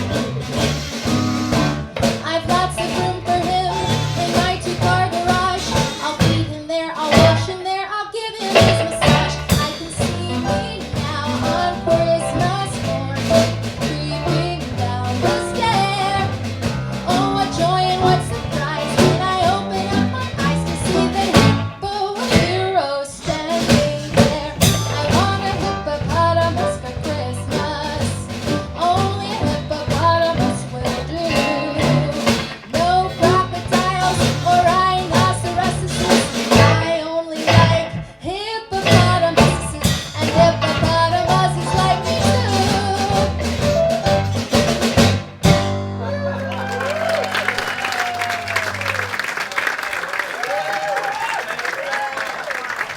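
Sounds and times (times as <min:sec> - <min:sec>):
live band playing upbeat song: 0:00.0 - 0:07.7, 0:08.4 - 0:50.8
person singing: 0:02.0 - 0:43.8.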